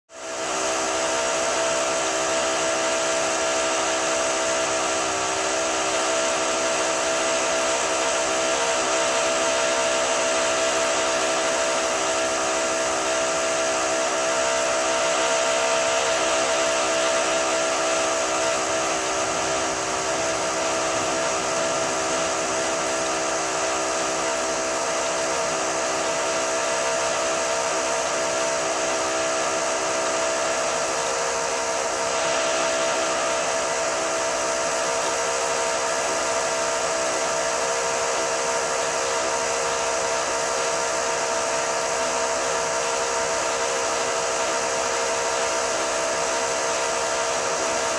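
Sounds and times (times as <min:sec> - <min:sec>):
power drill whining: 0:00.2 - 0:47.9.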